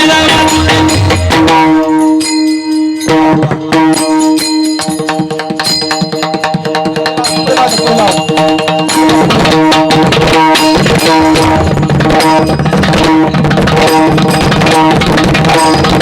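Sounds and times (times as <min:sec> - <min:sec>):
fast hand drum strokes: 0:03.3 - 0:16.0.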